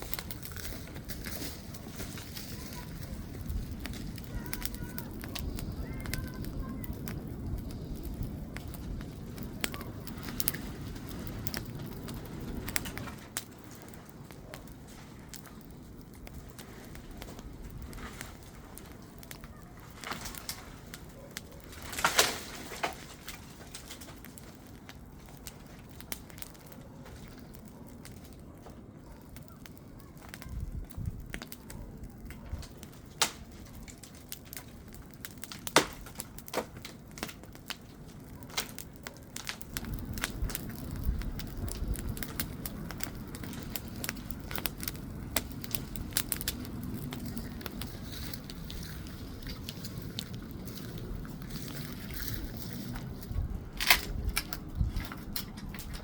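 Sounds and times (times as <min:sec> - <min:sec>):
low rumbling: 0:00.0 - 0:21.0, 0:39.6 - 0:56.0
bonfire crackling and popping: 0:00.0 - 0:56.0.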